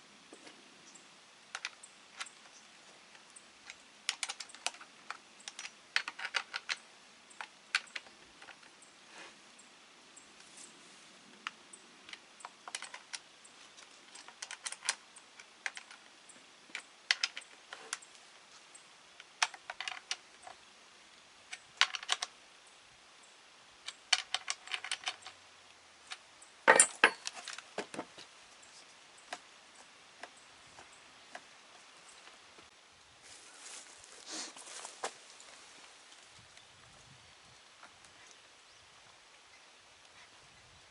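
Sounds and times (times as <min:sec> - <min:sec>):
hard objects clicking and clattering: 0:03.2 - 0:06.8, 0:19.3 - 0:20.6, 0:26.1 - 0:28.3.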